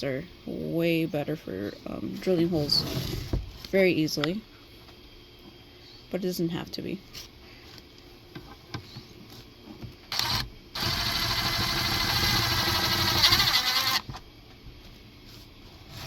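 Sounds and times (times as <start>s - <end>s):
electric drill whirring: 10.1s - 14.2s.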